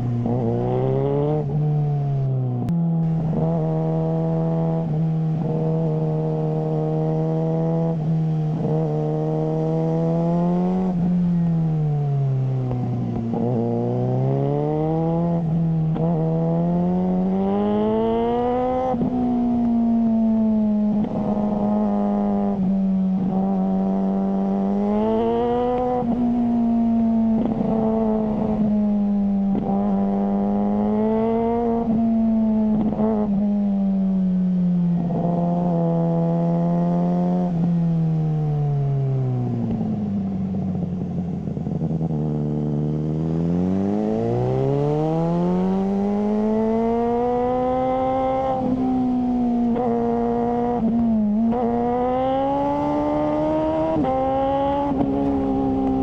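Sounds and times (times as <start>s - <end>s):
motorcycle engine running: 39.4s - 48.8s, 49.4s - 56.0s.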